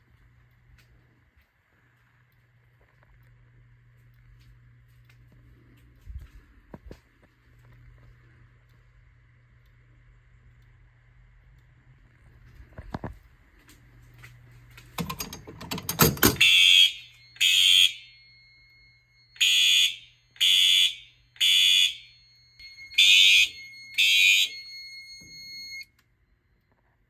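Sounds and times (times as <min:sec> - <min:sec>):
rattle of clicks: 0:14.8 - 0:16.4
harsh fire alarm horn blasts: 0:16.0 - 0:25.9.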